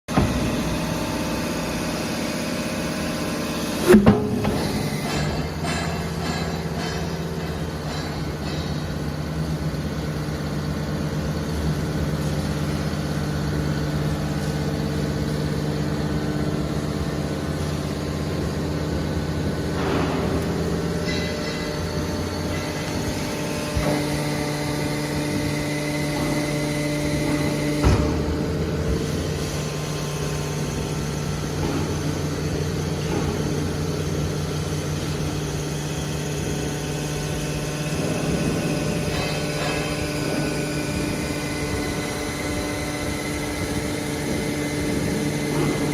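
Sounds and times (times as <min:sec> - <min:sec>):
hydraulic power unit hum: 0:00.0 - 0:45.9
sharp metal knocks: 0:03.8 - 0:09.2, 0:19.7 - 0:33.8, 0:38.0 - 0:45.9.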